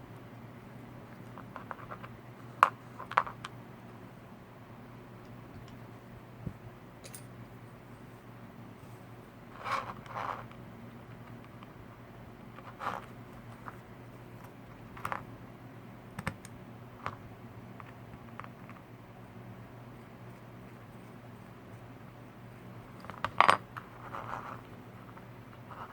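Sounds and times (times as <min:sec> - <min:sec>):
steady low hum: 0:00.0 - 0:25.9.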